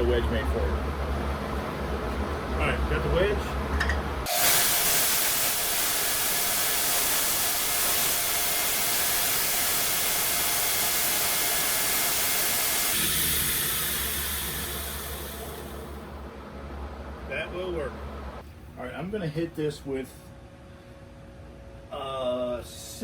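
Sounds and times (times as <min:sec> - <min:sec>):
power tool whirring: 0:04.3 - 0:16.0.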